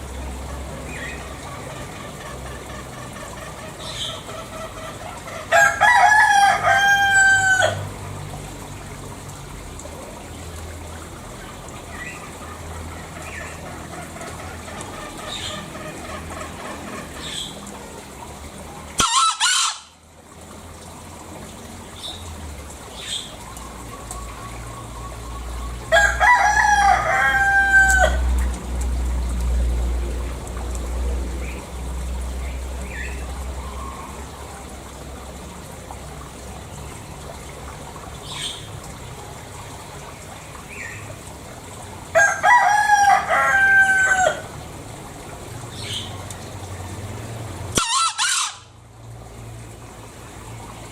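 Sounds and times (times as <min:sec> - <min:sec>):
junglefowl crowing: 0:01.6 - 0:07.8, 0:19.0 - 0:20.0, 0:25.9 - 0:28.4, 0:42.1 - 0:44.5, 0:47.7 - 0:48.8.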